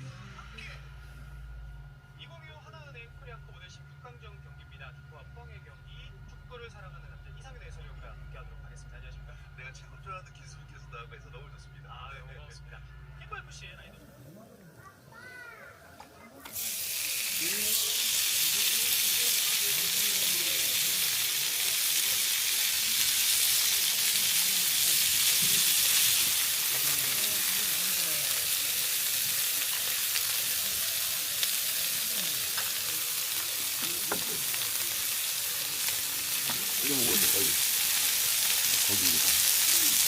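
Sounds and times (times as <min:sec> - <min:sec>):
faint voices: 0:10.5 - 0:40.0
food sizzling in a pan: 0:16.5 - 0:40.0.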